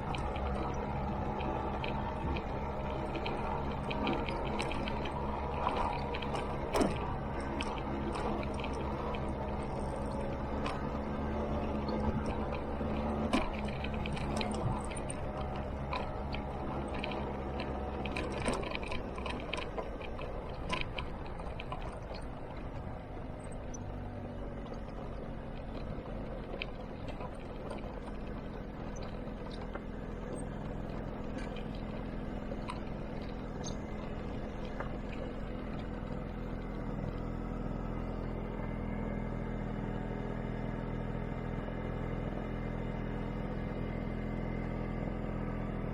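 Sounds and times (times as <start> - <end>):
scooter engine running: 0.0 - 45.9.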